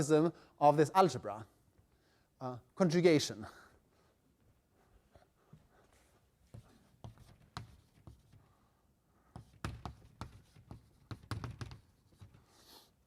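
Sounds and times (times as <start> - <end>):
chalk tapping on blackboard: 6.5 - 8.5, 9.3 - 12.8.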